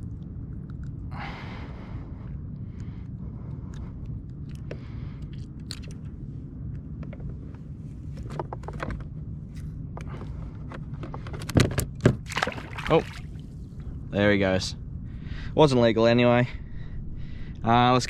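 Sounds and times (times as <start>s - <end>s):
steady low rumble: 0.0s - 18.0s
fish and tackle being handled: 4.3s - 6.2s.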